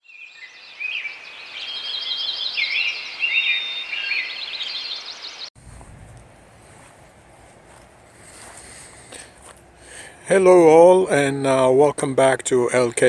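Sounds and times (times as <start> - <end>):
birds singing and chirping: 0.0 - 5.5
faint low outdoor rumble: 5.6 - 13.0.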